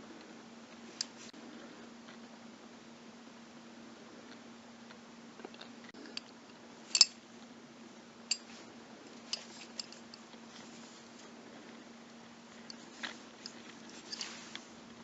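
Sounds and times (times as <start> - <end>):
steady low hum: 0.0 - 15.0
metal buckle clicks and taps: 6.9 - 7.1.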